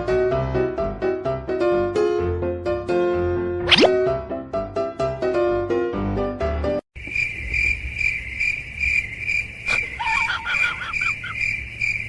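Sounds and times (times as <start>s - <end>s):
crickets chirping: 7.0s - 12.0s.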